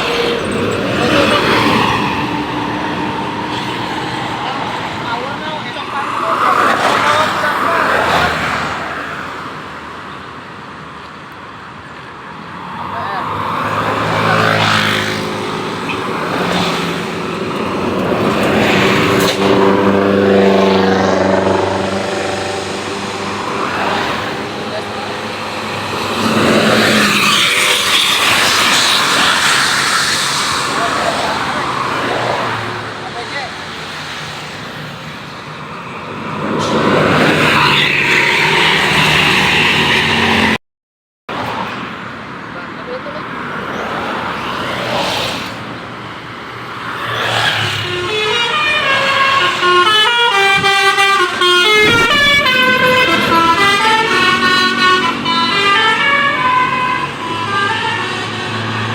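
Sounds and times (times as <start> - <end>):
bus engine noise: 0.0 - 40.6, 41.3 - 58.9
motor vehicle passing close: 13.3 - 33.0, 46.4 - 49.7
bus multi-tone air horn: 47.7 - 58.9.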